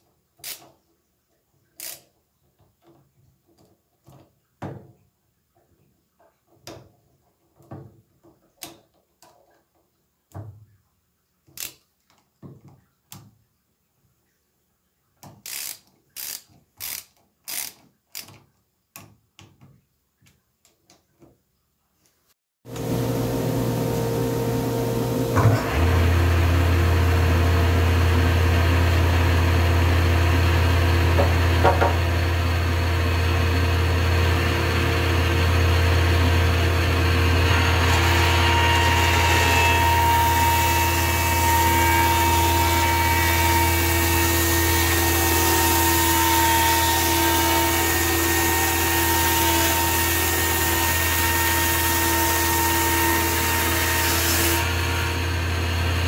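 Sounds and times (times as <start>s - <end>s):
planer cutting board: 22.7s - 56.0s
planer humming: 22.7s - 56.0s.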